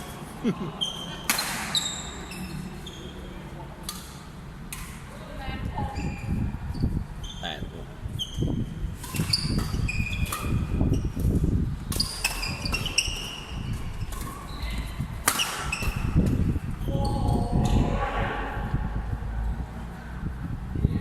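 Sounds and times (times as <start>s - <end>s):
shoes squeaking on court floor: 0.8s - 3.3s, 8.2s - 17.8s
racket hitting shuttlecock: 15.2s - 16.4s.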